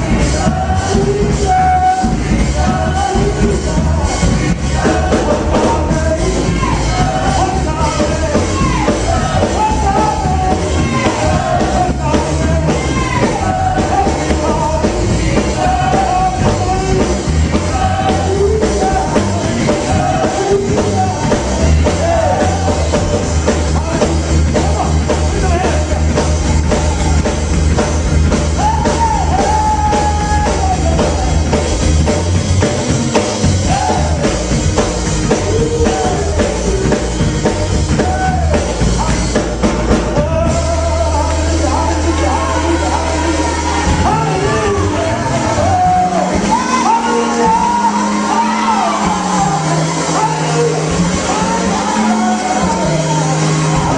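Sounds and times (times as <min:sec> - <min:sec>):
choir singing: 0:00.0 - 0:23.2, 0:40.2 - 0:53.9
band with drums: 0:00.0 - 0:53.9.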